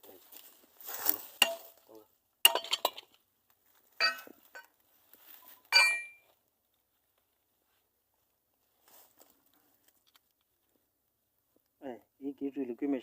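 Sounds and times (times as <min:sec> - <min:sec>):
hammer striking steel hub: 0:04.0 - 0:04.3, 0:05.8 - 0:06.2.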